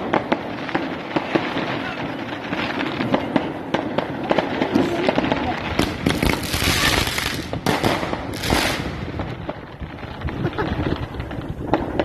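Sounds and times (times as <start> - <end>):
fireworks bangs and crackling: 0.0 - 12.0.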